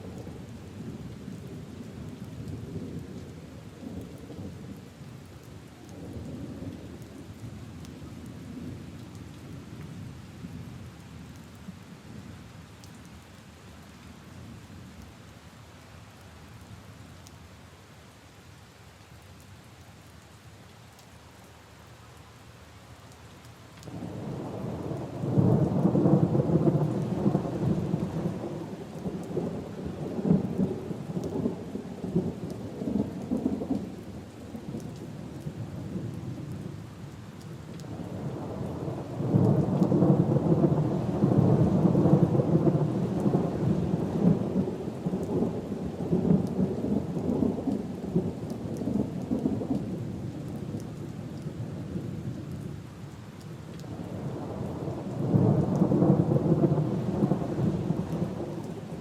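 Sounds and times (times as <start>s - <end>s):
rain falling: 0.0s - 59.0s
thunder rumbling: 23.9s - 33.9s, 38.0s - 50.7s, 54.0s - 59.0s.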